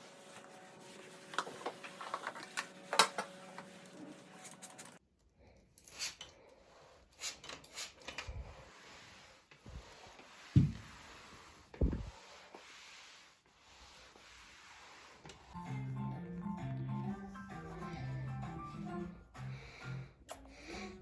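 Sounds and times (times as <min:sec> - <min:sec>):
rubbing and scraping: 0:00.0 - 0:05.0, 0:06.0 - 0:15.6.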